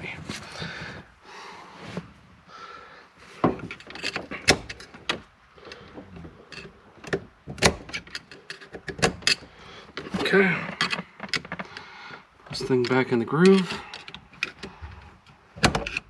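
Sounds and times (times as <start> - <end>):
tools clicking and knocking: 3.4 - 10.1, 10.7 - 11.8, 12.6 - 14.8.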